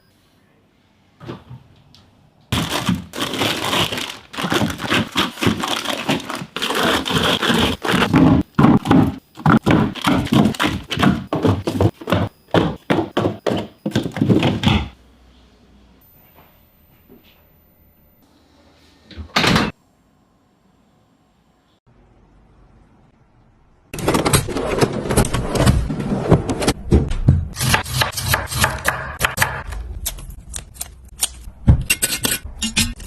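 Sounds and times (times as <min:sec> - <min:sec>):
plastic packaging crinkling: 0:02.6 - 0:08.1.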